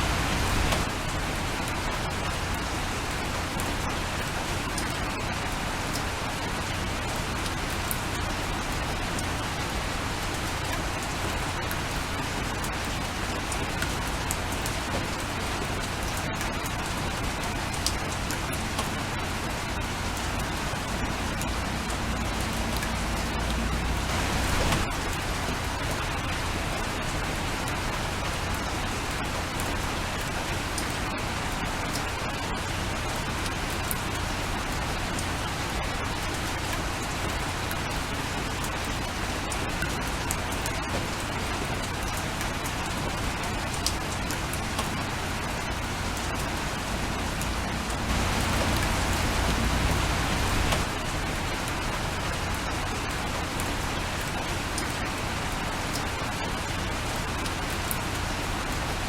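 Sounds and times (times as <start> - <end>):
steady rain falling: 0.0 - 59.0
low rumble: 46.9 - 50.9.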